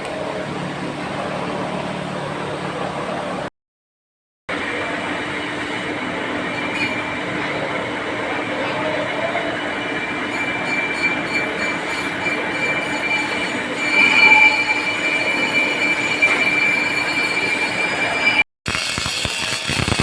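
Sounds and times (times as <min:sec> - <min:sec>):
lathe cutting tool squealing: 0:05.6 - 0:20.0.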